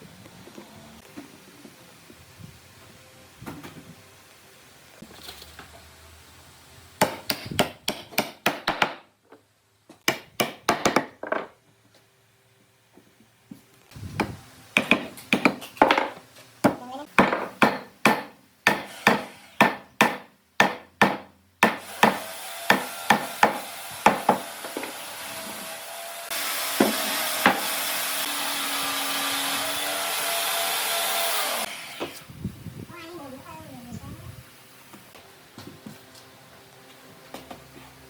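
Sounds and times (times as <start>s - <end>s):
hammer striking wood: 7.0s - 9.1s, 10.0s - 11.5s, 14.2s - 25.0s, 26.6s - 27.9s.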